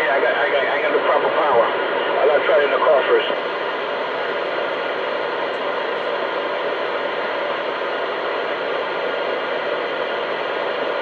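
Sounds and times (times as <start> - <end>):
radio static hiss: 0.0 - 3.7.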